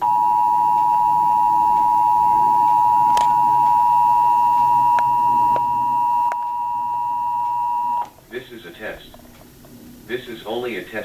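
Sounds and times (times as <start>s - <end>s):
two-tone alert signal: 0.0s - 8.1s.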